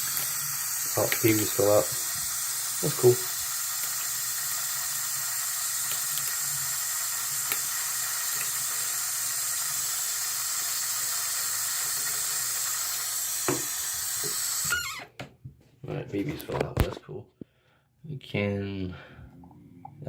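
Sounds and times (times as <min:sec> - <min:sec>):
tap running into sink: 0:00.0 - 0:04.1, 0:13.4 - 0:14.9.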